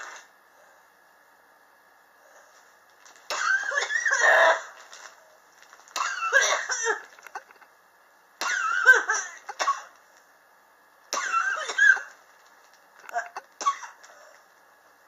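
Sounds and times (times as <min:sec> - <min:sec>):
person coughing: 0:06.0 - 0:07.1, 0:08.4 - 0:10.0, 0:11.2 - 0:12.1, 0:13.1 - 0:14.3.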